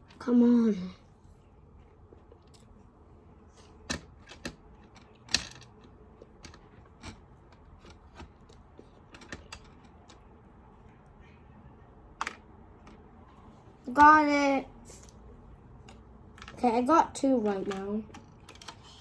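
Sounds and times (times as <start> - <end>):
plastic toy pieces clicking: 3.9 - 8.4, 9.1 - 10.2, 17.4 - 19.0.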